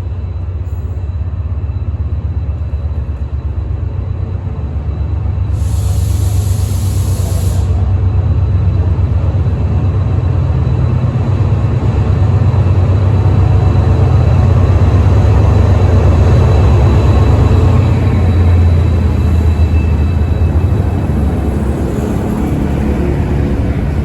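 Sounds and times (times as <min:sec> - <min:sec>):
locomotive diesel engine drone: 0:00.0 - 0:24.0.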